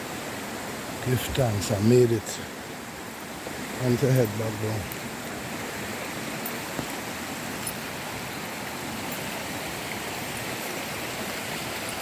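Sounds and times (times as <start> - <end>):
waterfall splashing into pool: 3.4 - 12.0.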